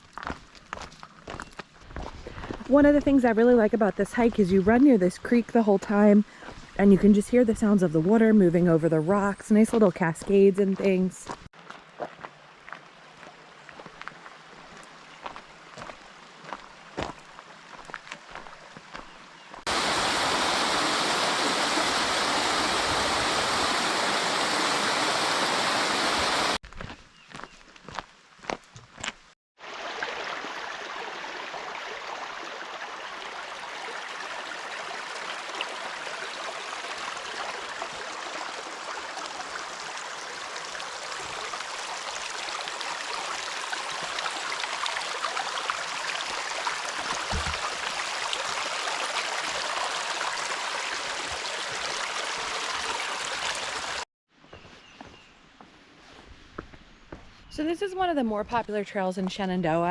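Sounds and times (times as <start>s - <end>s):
creek water running over rocks: 0.0s - 26.6s, 29.6s - 54.0s.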